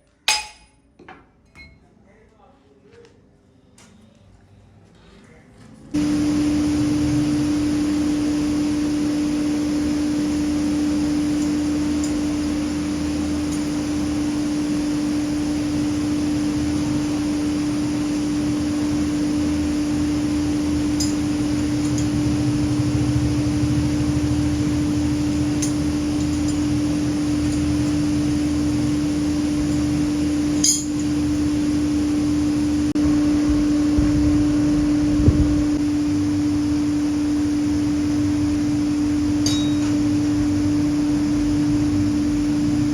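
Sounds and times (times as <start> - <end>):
machine hum with constant tone: 0.0 - 42.9
sharp clink: 30.6 - 31.1, 39.4 - 40.0.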